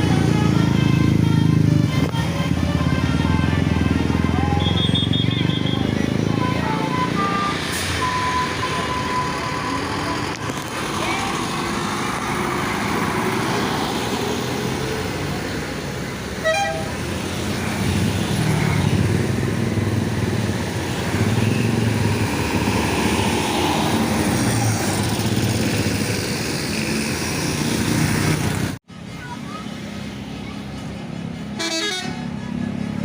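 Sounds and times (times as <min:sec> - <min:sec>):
bus engine rumble: 0:00.0 - 0:33.0
road traffic: 0:00.0 - 0:33.0
car horn toot: 0:04.6 - 0:05.9, 0:16.4 - 0:17.0, 0:31.6 - 0:32.2.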